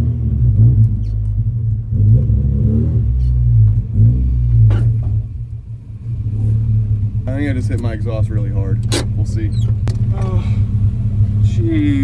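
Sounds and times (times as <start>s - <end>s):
car engine rumbling exhaust: 0.0s - 12.0s
exhaust striking road bang: 3.6s - 12.0s.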